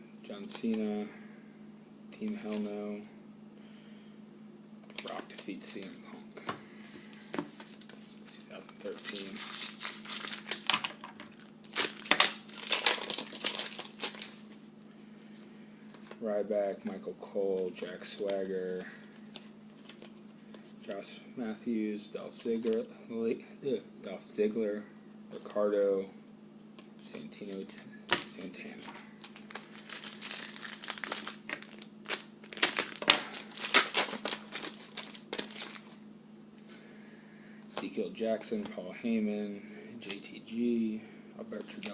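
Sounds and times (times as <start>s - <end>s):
foil wrapper crinkling: 7.5s - 14.5s, 27.5s - 36.0s.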